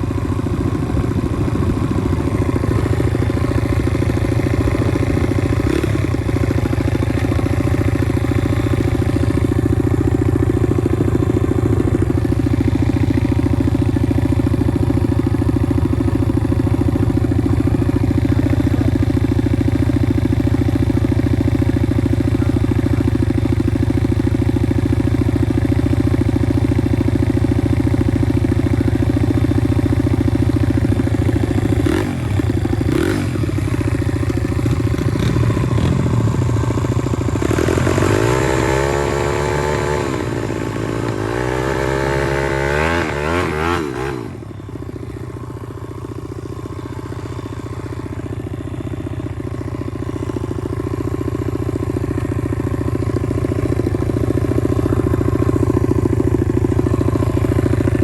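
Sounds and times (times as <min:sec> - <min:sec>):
small motorcycle engine revving: 0:00.0 - 0:23.6, 0:28.7 - 0:58.0.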